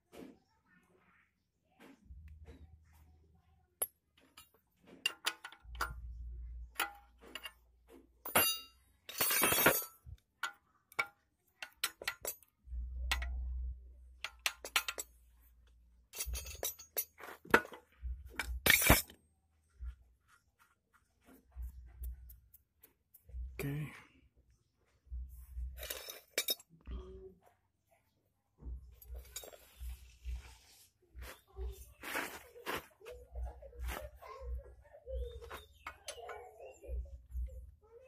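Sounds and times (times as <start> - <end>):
metal tools clinking: 3.8 - 13.5, 14.2 - 19.2, 25.6 - 26.9, 28.9 - 30.4, 35.2 - 37.5.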